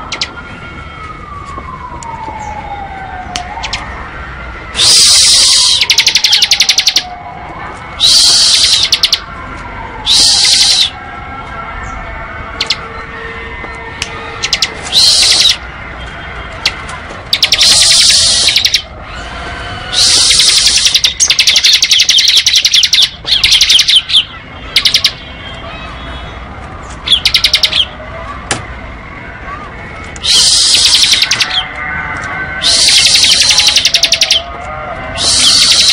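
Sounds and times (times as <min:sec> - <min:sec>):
bird rapid trilling song: 0:04.8 - 0:07.1, 0:08.0 - 0:09.2, 0:10.1 - 0:10.9, 0:14.4 - 0:15.6, 0:17.3 - 0:18.9, 0:20.0 - 0:25.2, 0:27.0 - 0:27.9, 0:30.2 - 0:31.7, 0:32.6 - 0:34.4, 0:35.2 - 0:35.9.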